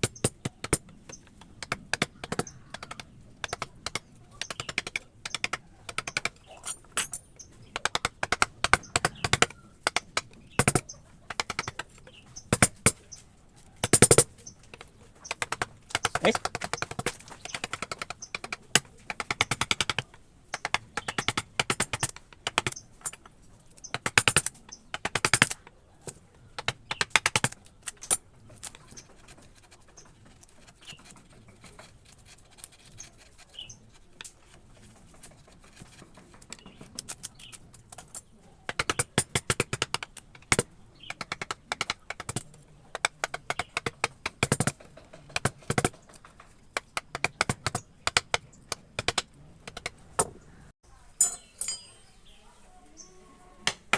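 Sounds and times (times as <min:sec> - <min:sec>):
mallet tapping wood chisel: 0:00.0 - 0:06.4, 0:07.7 - 0:11.9, 0:13.8 - 0:23.2, 0:23.9 - 0:25.6, 0:38.7 - 0:46.2, 0:46.8 - 0:48.4, 0:49.0 - 0:50.3.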